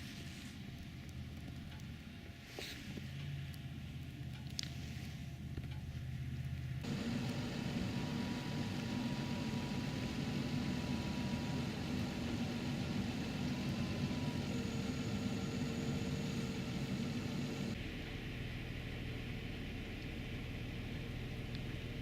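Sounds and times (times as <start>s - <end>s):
car engine and road noise: 6.0s - 17.9s.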